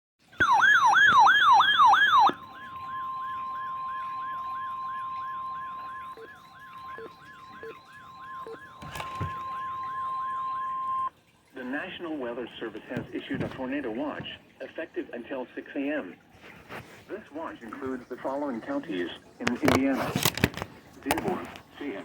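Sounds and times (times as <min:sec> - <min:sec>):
siren sweeping up and down: 0:00.4 - 0:11.1
steady single-pitch alarm tone: 0:00.4 - 0:11.2.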